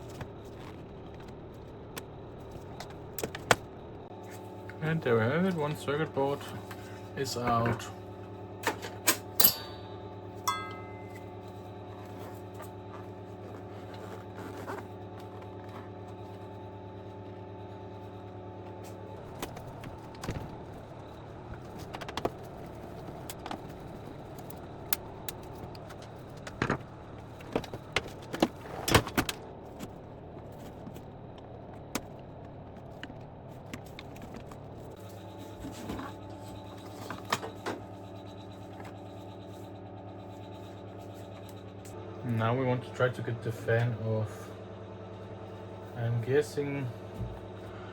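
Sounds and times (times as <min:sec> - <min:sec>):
parts and tools clicking and scraping: 0:00.0 - 0:03.7
steady low hum: 0:00.0 - 0:47.9.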